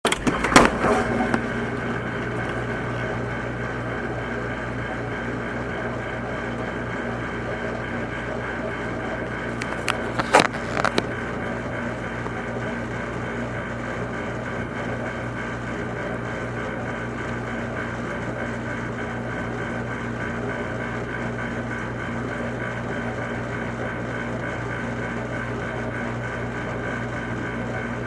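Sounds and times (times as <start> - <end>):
dishwasher running: 0.0 - 28.0.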